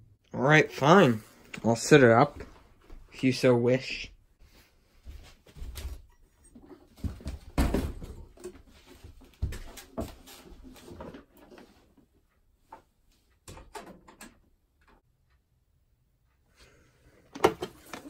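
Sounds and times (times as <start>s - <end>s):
objects knocking and clunking: 5.6s - 11.8s, 17.3s - 18.0s.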